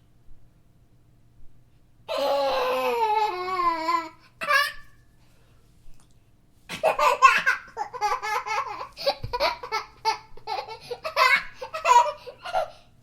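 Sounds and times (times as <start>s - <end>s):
small boy laughing: 2.1s - 4.9s, 6.7s - 12.8s.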